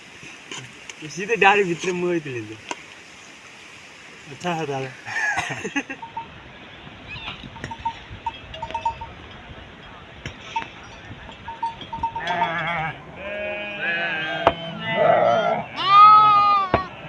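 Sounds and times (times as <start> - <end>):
livestock neck bells tinkling: 4.4 - 13.1
sheep bleating: 12.2 - 17.0.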